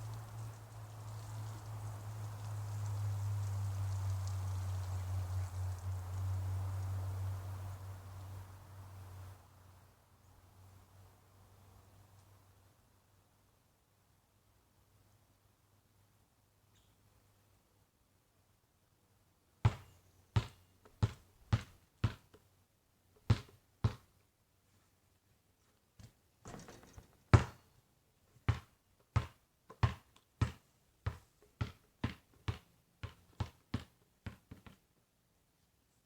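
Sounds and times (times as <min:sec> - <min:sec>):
basketball bouncing: 0:19.7 - 0:22.3, 0:23.3 - 0:24.0, 0:26.5 - 0:27.6, 0:28.5 - 0:34.8.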